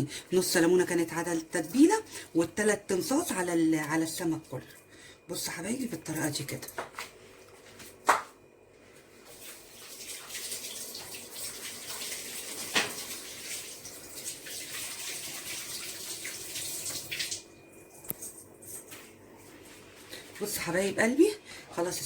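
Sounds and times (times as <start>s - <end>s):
water running from a tap: 9.3s - 18.4s.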